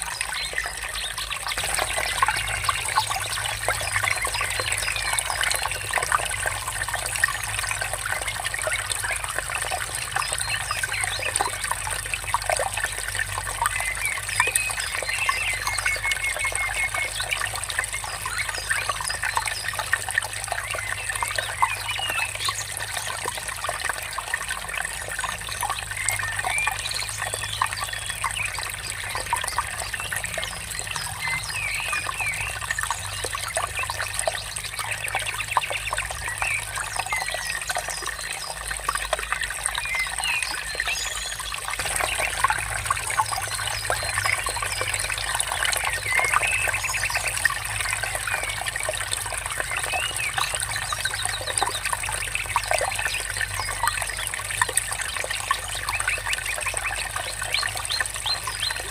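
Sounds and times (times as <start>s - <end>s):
water trickling: 0.0s - 58.9s
birds chirping and trilling: 39.7s - 58.9s.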